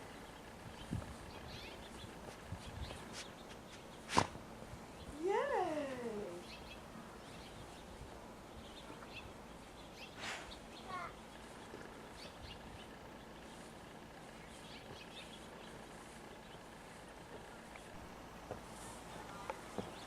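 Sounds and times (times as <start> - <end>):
brief rustle: 3.0 - 4.4.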